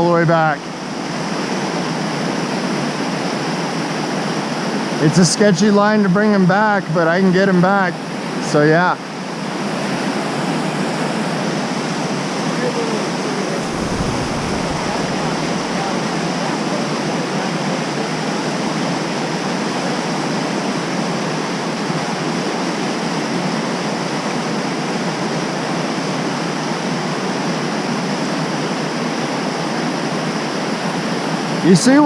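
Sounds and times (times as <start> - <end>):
whitewater river rushing: 13.3 - 16.8.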